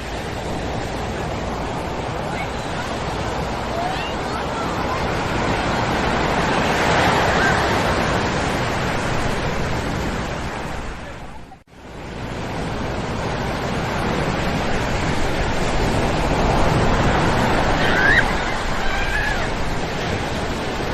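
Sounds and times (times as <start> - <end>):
ocean surf on sandy shore: 0.0 - 20.9
faint children's voices: 1.2 - 8.1.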